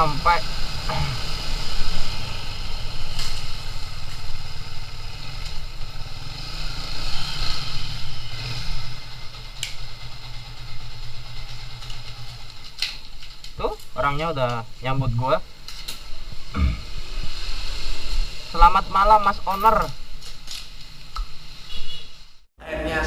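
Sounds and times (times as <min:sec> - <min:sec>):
motorcycle engine running: 0:00.0 - 0:13.3.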